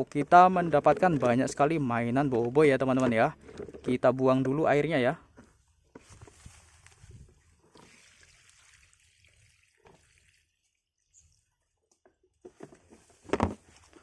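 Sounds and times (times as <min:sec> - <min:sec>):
water being poured: 0:06.5 - 0:11.7.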